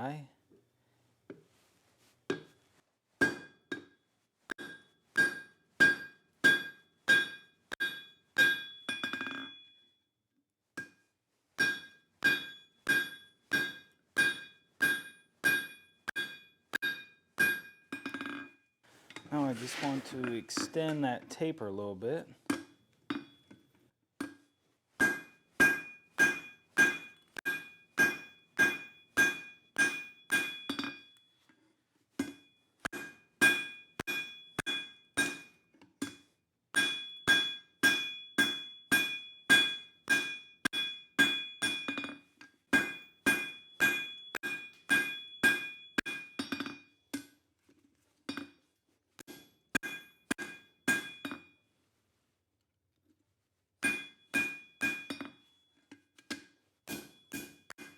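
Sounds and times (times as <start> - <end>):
hammer striking steel on anvil: 3.2 - 9.7, 11.6 - 18.5, 25.0 - 31.2, 32.2 - 42.2, 42.8 - 47.3, 49.2 - 51.5, 53.8 - 55.4, 56.3 - 57.9.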